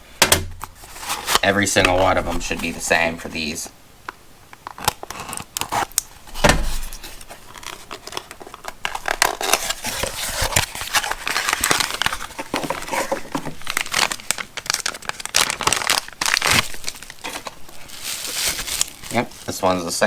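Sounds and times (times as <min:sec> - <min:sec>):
plastic packaging crinkling: 0:00.5 - 0:03.5, 0:04.6 - 0:20.0
thump: 0:06.4 - 0:06.8.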